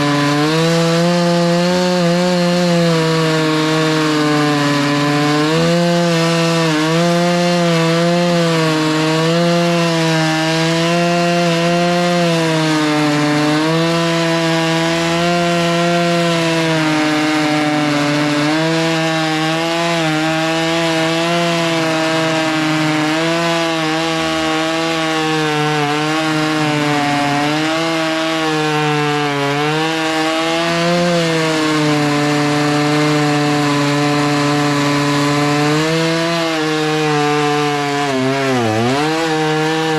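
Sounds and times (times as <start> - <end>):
chainsaw cutting log under load: 0.0 - 39.9.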